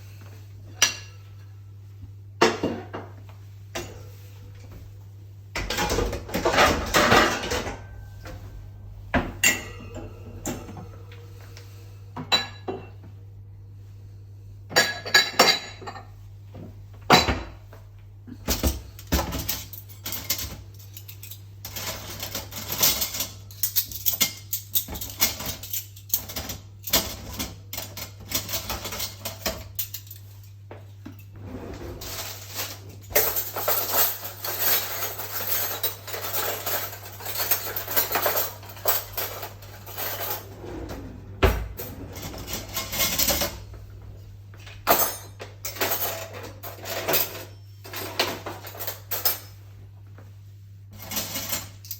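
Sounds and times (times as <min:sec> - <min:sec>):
low steady hum: 0:00.0 - 0:51.8
dishes and cutlery clinking: 0:05.6 - 0:08.6, 0:14.7 - 0:16.2, 0:18.4 - 0:49.6.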